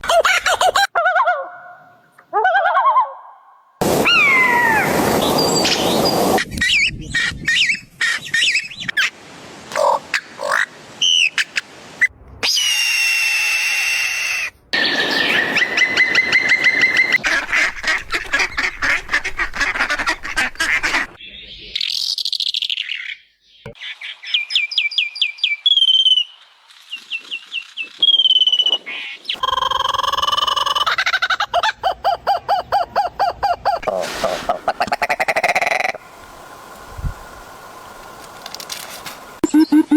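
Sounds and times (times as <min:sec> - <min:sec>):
duck and fowl calls: 0:15.4 - 0:21.2.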